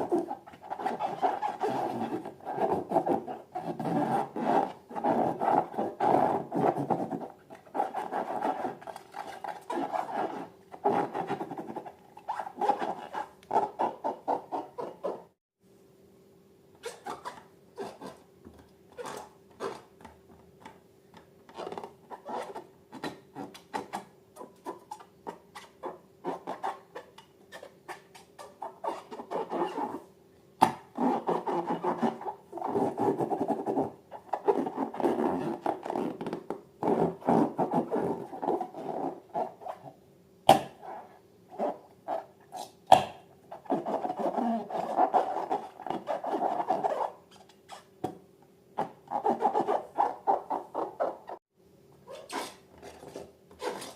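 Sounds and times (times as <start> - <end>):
faint steady hum: 15.1 - 50.6.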